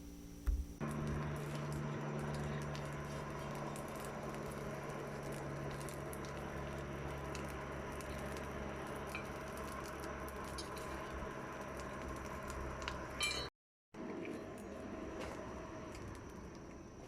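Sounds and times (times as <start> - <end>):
faint crackles: 0.0 - 13.3
forge hissing and rumbling: 0.0 - 17.0
hum: 0.0 - 17.0.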